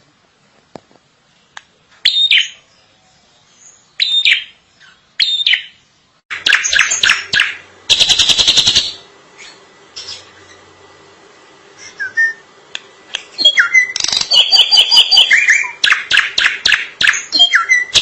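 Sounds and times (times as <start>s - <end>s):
bird singing: 2.0s - 10.6s, 13.3s - 18.0s.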